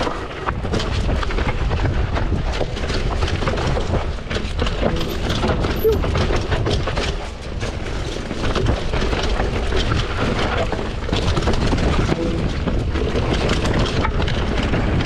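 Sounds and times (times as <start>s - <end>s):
tyres on dirt and rocks: 0.0s - 15.0s
chain and frame rattle: 2.8s - 15.0s
low rumble: 4.6s - 6.6s, 9.6s - 15.0s.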